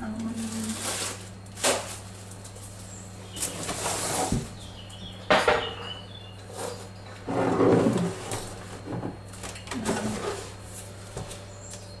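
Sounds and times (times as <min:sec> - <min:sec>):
steady low hum: 0:00.0 - 0:12.0
things knocked about in cupboard: 0:03.4 - 0:06.0, 0:06.7 - 0:10.5.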